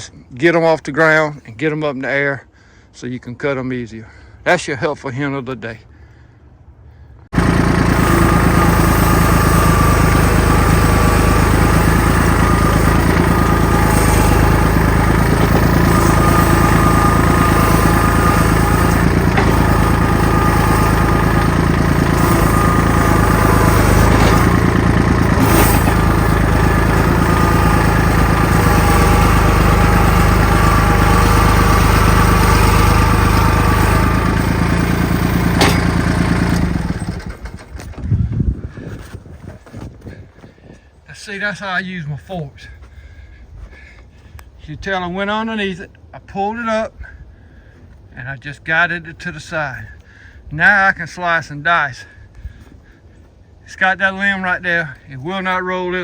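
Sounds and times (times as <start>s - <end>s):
tractor diesel engine running: 6.4s - 39.9s.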